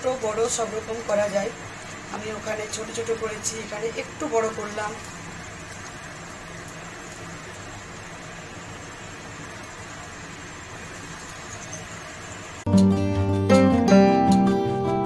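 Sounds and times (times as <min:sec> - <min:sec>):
steady background hiss: 0:00.0 - 0:12.7
guitar music: 0:12.7 - 0:15.0.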